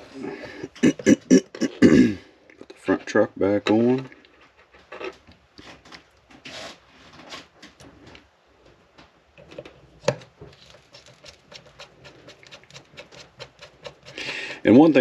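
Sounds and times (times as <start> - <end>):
hands clicking and scraping toy parts: 9.4 - 14.6.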